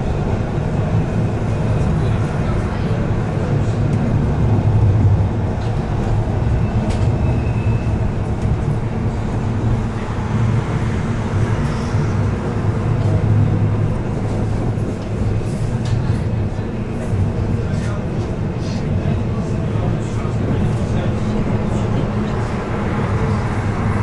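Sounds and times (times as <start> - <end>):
tram rumbling on rails: 0.0 - 24.0.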